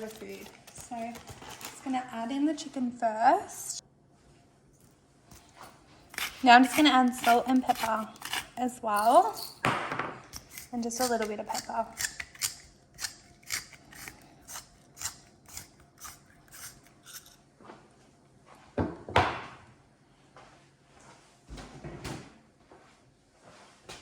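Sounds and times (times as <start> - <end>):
pepper grinder crunching: 0.0 - 1.9, 4.8 - 9.6, 10.3 - 17.4
kitchen knocks and rustles: 18.7 - 19.7, 21.5 - 22.4.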